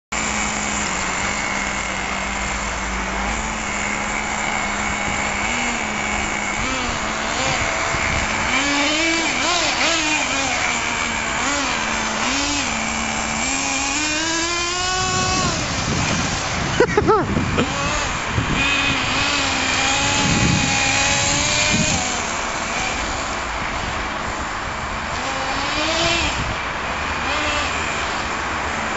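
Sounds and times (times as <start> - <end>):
rc car engine buzzing: 0.1 - 28.9.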